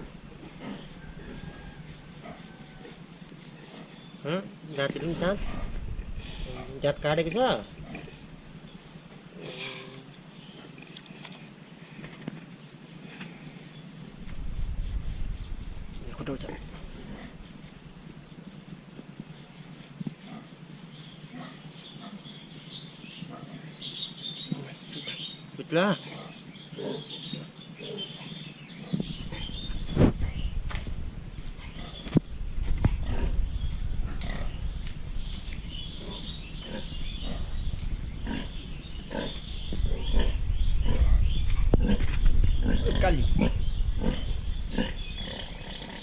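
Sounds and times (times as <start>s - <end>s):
pigs grunting: 31.7s - 32.1s, 34.1s - 34.6s, 36.0s - 37.6s, 38.2s - 41.2s, 41.8s - 46.0s
pig grunting: 38.2s - 41.2s.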